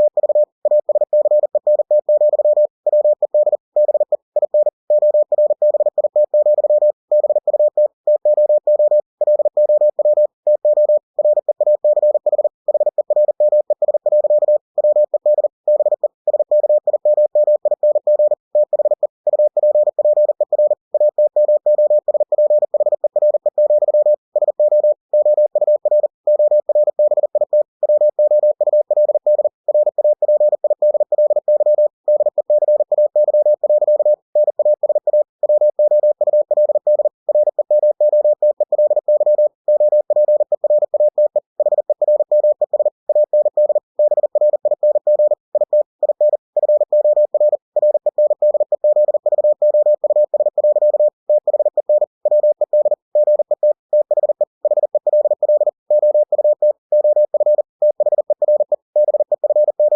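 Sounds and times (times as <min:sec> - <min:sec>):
morse code tone: 0:00.0 - 0:59.9.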